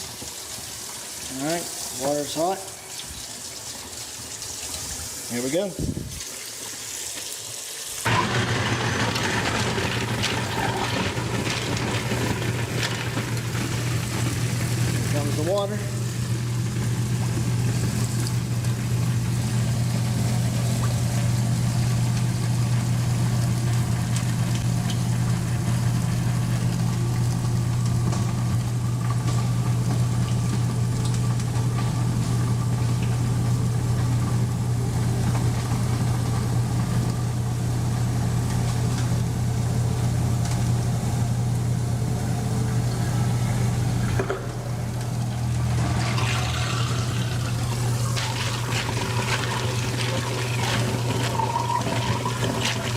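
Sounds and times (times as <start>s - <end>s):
garbage disposal grinding ice: 7.9s - 52.9s
tap water running into sink: 45.6s - 52.9s.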